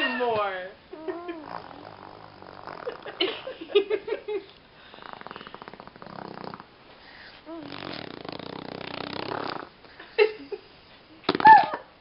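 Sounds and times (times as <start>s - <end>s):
baby blowing raspberries: 1.0s - 3.0s, 4.9s - 9.8s.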